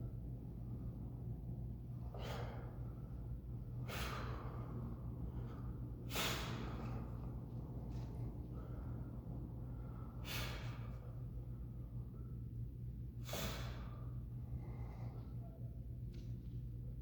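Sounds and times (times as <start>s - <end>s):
steady low hum: 0.0s - 17.0s
man breathing hard: 2.0s - 12.5s, 13.2s - 15.6s.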